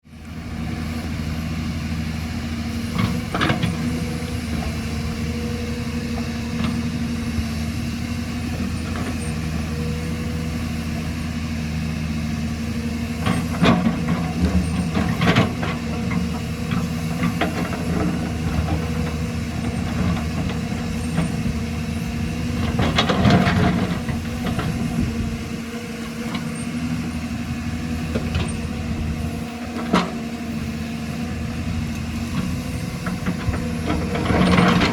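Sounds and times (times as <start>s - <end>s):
excavator diesel engine running: 0.1s - 34.9s
excavator scraping: 0.6s - 34.9s.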